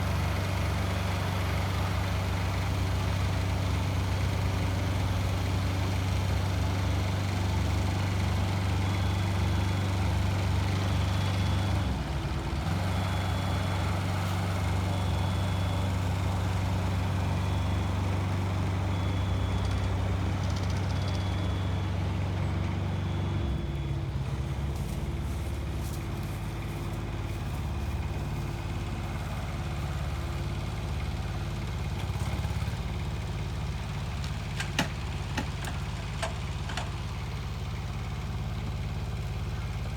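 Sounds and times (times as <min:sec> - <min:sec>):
heavy machinery engine running: 0:00.0 - 0:39.9.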